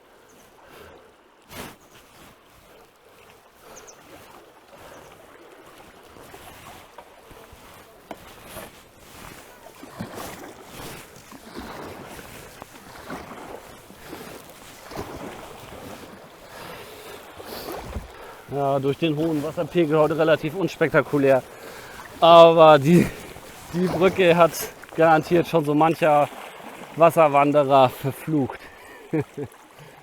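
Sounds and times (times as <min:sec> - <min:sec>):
paddle strokes splashing: 0:00.0 - 0:30.0
river water rushing: 0:11.4 - 0:30.0.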